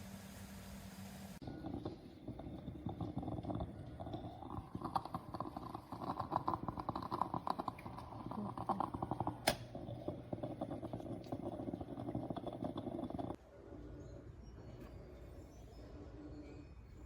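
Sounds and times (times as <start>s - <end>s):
water bubbling in moka pot: 1.4s - 13.4s.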